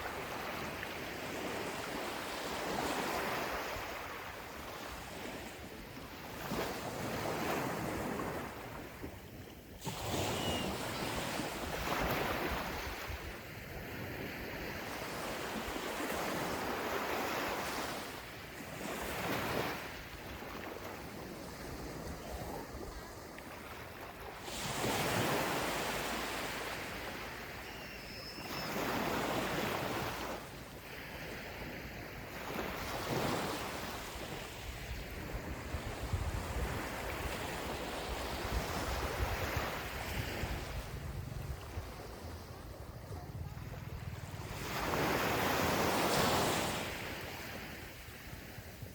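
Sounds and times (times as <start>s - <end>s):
ocean waves breaking on beach: 0.0s - 48.9s.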